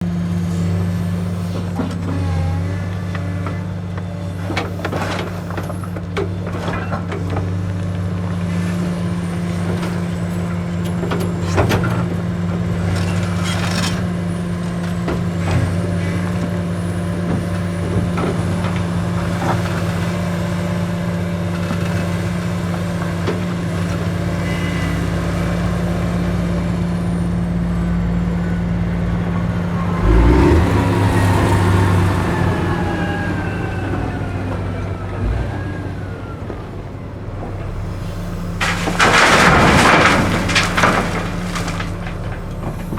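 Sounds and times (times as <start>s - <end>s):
excavator diesel engine running: 0.0s - 42.9s
knocks and clatters: 38.6s - 42.9s.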